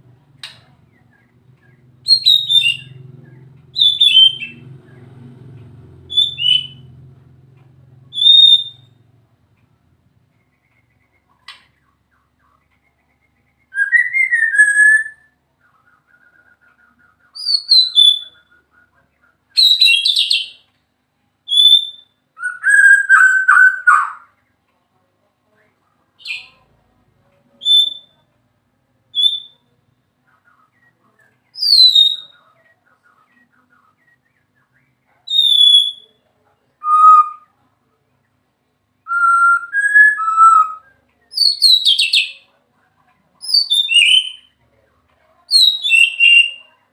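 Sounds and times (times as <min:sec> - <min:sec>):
bird singing whistled phrases: 0:01.0 - 0:03.0, 0:03.8 - 0:04.6, 0:06.1 - 0:06.9, 0:08.1 - 0:09.0, 0:13.4 - 0:18.7, 0:21.5 - 0:24.3, 0:27.6 - 0:28.2, 0:29.1 - 0:29.7, 0:31.6 - 0:32.5, 0:33.4 - 0:36.2, 0:36.8 - 0:37.5, 0:39.0 - 0:42.4, 0:43.4 - 0:44.5, 0:45.5 - 0:46.7.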